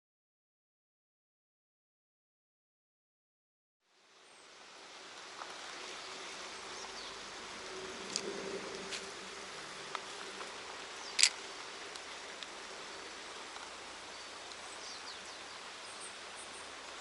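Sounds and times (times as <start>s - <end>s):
outdoor ambience: 3.8s - 17.0s
insect buzzing past: 5.0s - 16.7s.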